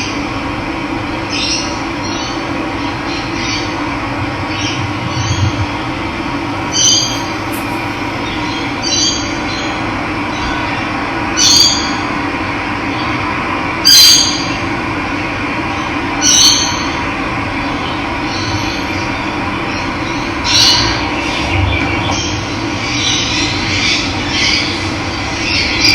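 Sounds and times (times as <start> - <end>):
bird short high call: 6.6 - 9.1.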